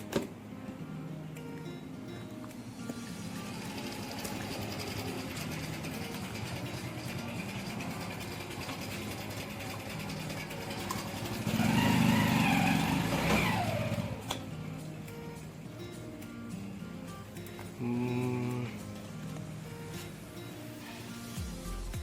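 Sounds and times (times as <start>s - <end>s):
background music: 0.0s - 22.0s
vehicle engine passing: 3.3s - 14.4s.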